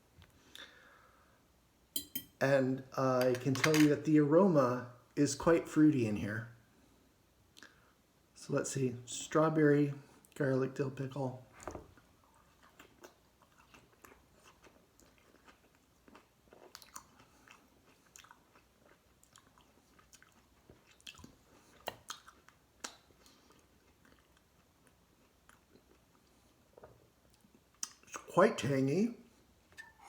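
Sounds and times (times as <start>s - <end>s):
chewing crunchy pickle: 12.3s - 28.1s.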